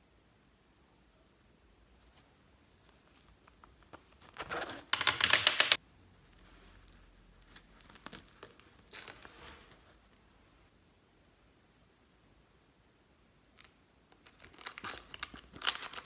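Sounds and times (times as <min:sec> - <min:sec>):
crackling from handling by hand: 0:04.4 - 0:05.8.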